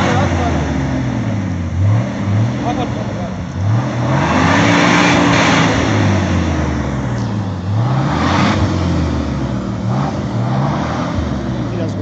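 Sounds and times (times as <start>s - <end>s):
engine revving under load: 0.0s - 12.0s
loud rushing noise: 3.5s - 11.8s.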